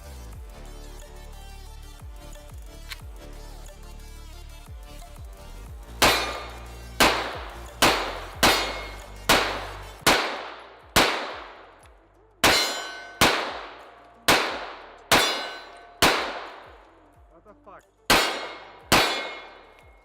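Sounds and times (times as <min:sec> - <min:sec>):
background music: 0:00.0 - 0:20.0
rifle shots with ringing tail: 0:06.0 - 0:11.7, 0:12.4 - 0:16.9, 0:18.1 - 0:20.0.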